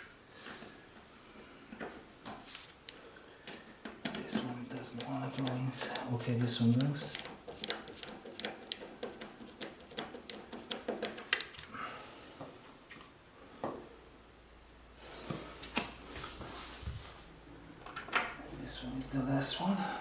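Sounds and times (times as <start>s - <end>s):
small parts and screws clicking: 5.0s - 11.7s
breathy exhalations: 11.7s - 12.8s.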